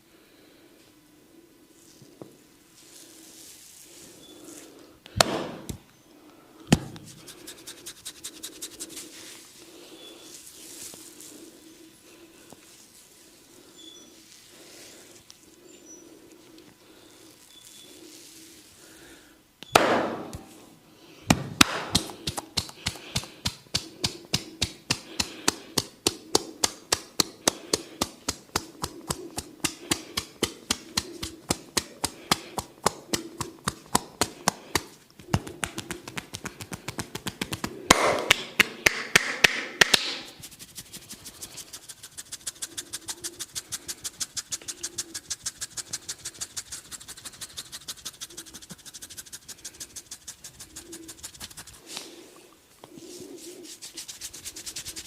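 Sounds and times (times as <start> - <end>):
hands tapping and slapping head: 21.3 - 40.4.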